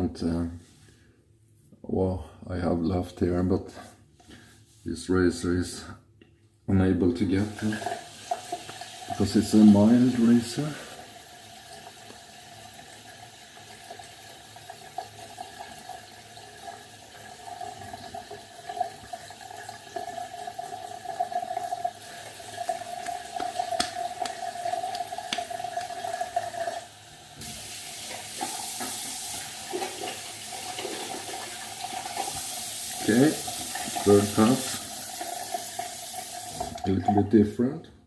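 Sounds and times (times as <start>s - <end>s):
tap water running into sink: 7.3s - 37.5s.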